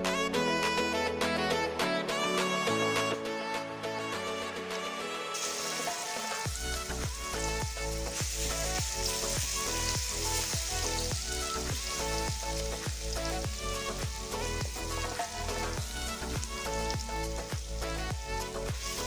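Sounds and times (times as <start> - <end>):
food sizzling in a pan: 5.3 - 19.0
music with heavy bass beat: 6.5 - 19.0.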